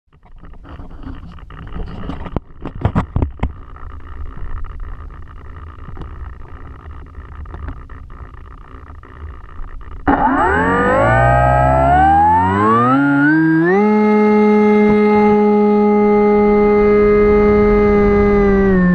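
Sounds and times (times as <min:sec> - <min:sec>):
electric motor and propeller whirring: 0:00.3 - 0:18.9
electronic music with rising tones: 0:10.1 - 0:18.9
wind on camera: 0:14.8 - 0:18.9.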